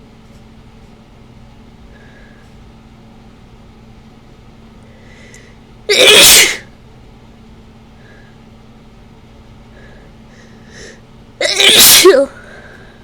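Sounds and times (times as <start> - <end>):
person sneezing loudly: 5.9 - 6.7, 11.4 - 12.4.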